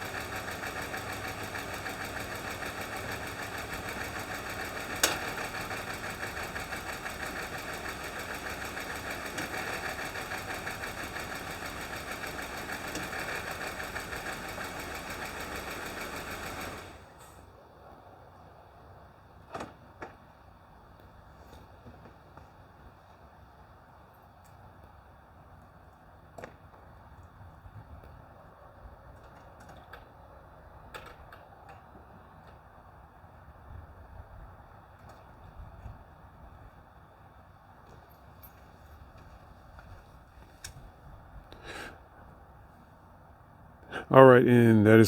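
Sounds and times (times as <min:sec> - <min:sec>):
car engine running with lifter tick: 0:00.0 - 0:17.4, 0:37.8 - 0:41.6.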